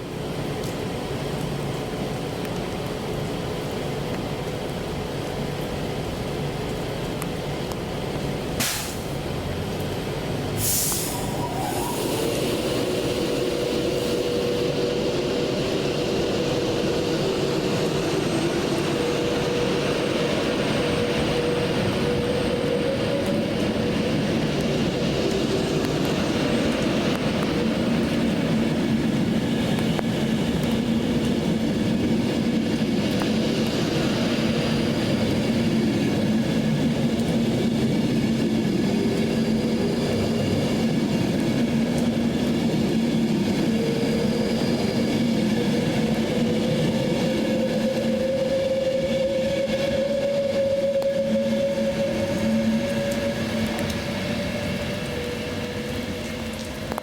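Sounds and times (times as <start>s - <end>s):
train rumbling: 0.0s - 57.0s.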